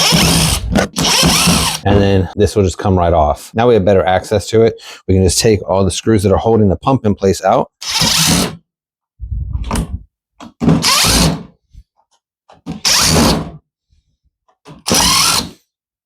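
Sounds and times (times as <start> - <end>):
power driver removing screws: 0.0 - 1.8, 10.6 - 11.4, 14.8 - 15.6.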